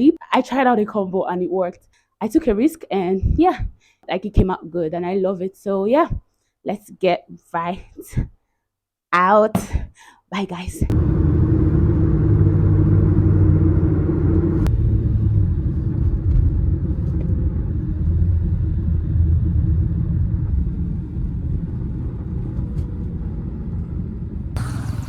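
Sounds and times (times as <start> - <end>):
vehicle engine rumble: 10.9 - 25.0.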